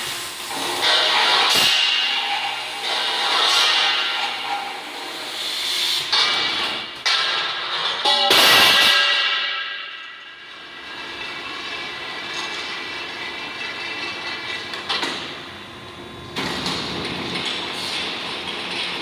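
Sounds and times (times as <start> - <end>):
metal pipe ringing: 7.0 - 10.7.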